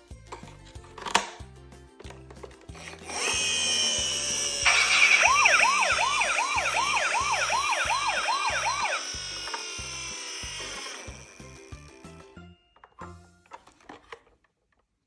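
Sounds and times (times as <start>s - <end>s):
toy siren yelping: 3.0s - 11.8s
steady high tone: 4.1s - 11.4s.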